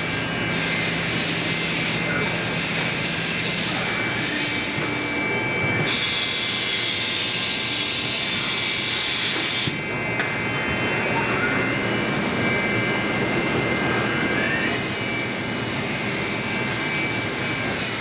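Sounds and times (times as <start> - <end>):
higher machine whine: 0.0 - 18.0
milling machine whirring: 0.0 - 18.0.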